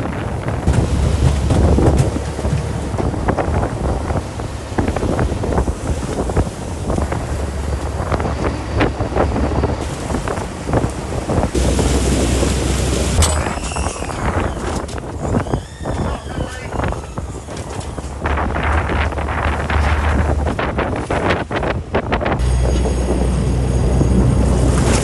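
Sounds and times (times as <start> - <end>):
waves splashing against hull: 0.0 - 25.0
wind buffeting microphone: 0.0 - 25.0.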